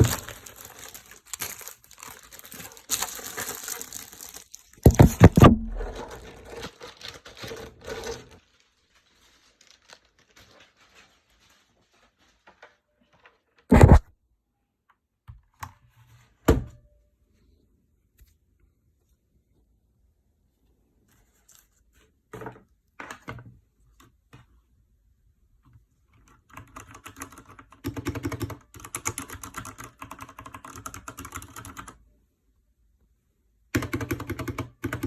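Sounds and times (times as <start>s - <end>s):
plastic and paper crinkling: 0.0s - 14.0s
sharp thuds: 4.8s - 6.0s
heavy thud: 4.9s - 6.0s.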